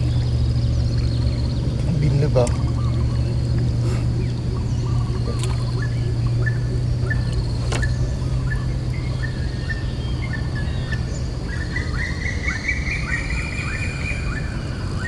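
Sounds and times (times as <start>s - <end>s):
low hum: 0.0s - 11.4s
bird chirping: 0.0s - 15.0s.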